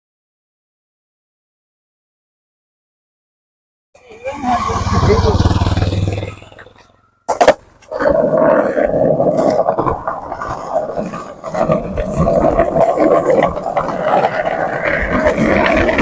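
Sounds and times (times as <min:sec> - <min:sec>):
skateboard wheels rolling on asphalt: 0:04.0 - 0:16.0.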